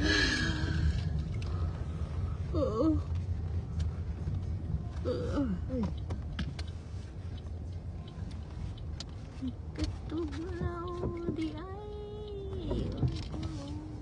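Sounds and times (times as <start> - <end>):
car engine rumble inside cabin: 0.0 - 14.0.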